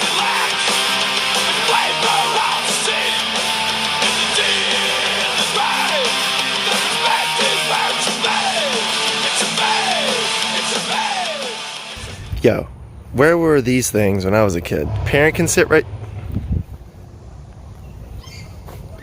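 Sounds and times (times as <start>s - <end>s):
guitar background music: 0.0s - 12.0s.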